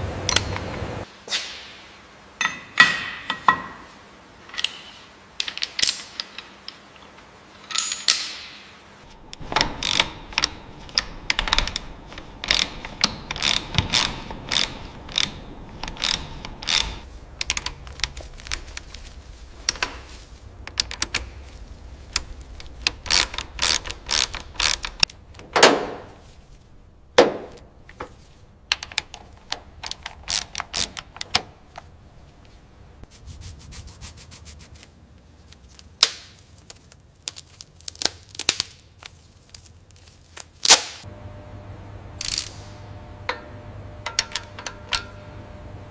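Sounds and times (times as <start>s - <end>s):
hand tools clicking on metal: 9.1s - 19.0s, 22.1s - 25.5s, 28.7s - 31.9s, 43.3s - 45.2s.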